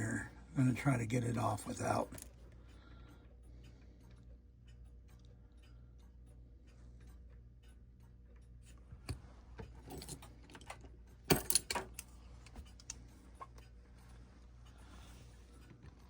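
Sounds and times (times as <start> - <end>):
metallic clinks: 9.7 - 13.5.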